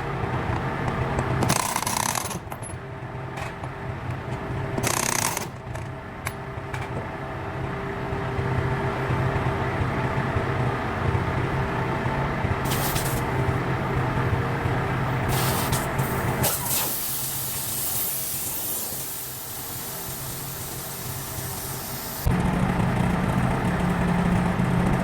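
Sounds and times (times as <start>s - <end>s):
engine running steadily: 0.0s - 25.0s
compressed air hissing: 12.7s - 13.3s, 15.3s - 22.3s.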